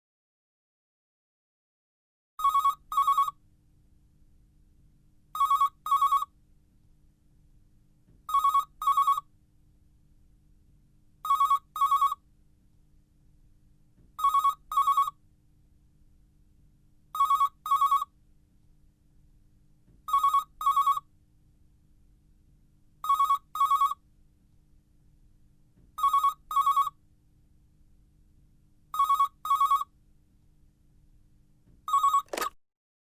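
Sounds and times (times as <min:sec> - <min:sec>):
telephone ringing: 0:02.4 - 0:03.3, 0:31.9 - 0:32.6.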